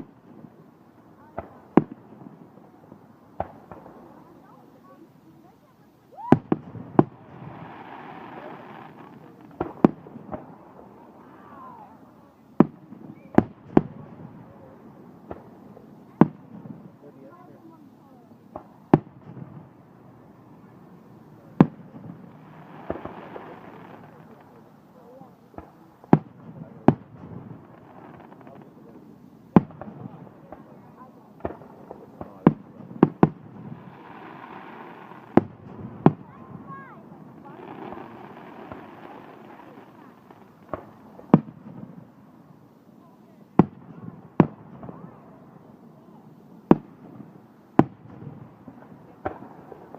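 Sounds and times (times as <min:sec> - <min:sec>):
fireworks bangs: 0:00.0 - 0:12.0, 0:12.6 - 0:49.9.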